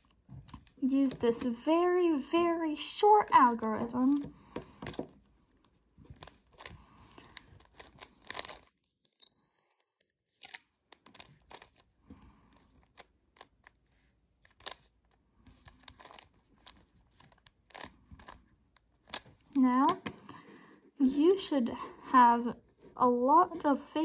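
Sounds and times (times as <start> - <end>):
plastic cube clicking: 14.4 - 14.9, 15.5 - 20.2.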